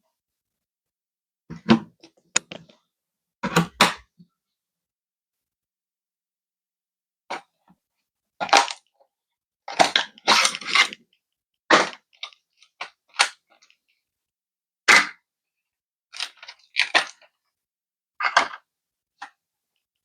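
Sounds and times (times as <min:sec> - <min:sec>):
computer hardware clicks and snaps: 0:02.4 - 0:02.6.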